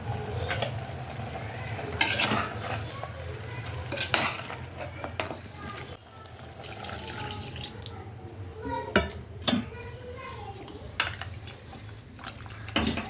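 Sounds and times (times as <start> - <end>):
metal utensils clinking and scraping: 0.4 - 6.0, 8.6 - 13.0.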